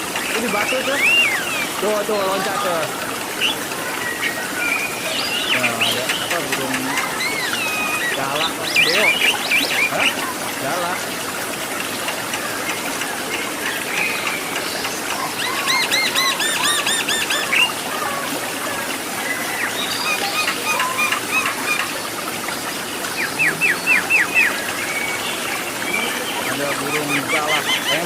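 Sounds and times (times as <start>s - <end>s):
waterfall rushing: 0.0s - 28.0s
bird squealing calls: 5.5s - 10.2s, 15.3s - 17.8s, 19.9s - 21.9s, 23.1s - 24.6s, 26.0s - 28.0s.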